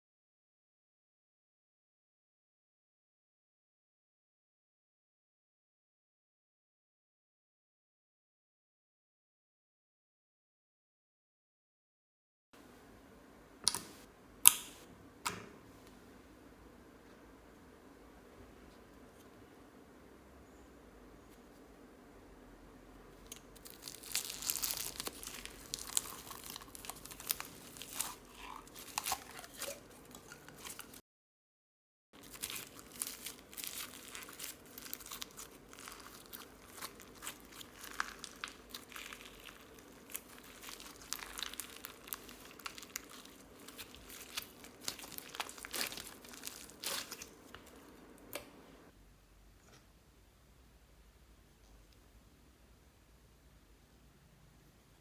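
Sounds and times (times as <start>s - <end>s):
slime squished by hand: 23.3s - 31.0s, 32.2s - 48.6s.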